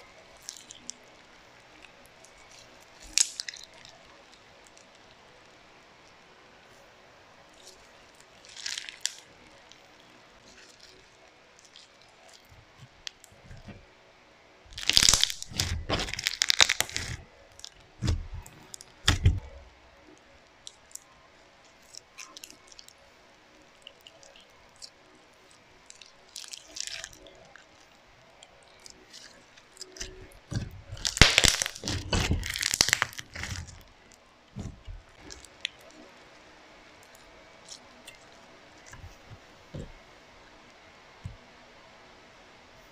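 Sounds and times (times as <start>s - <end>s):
slime crunching and popping: 0.2s - 5.5s, 7.6s - 13.8s, 14.7s - 36.1s.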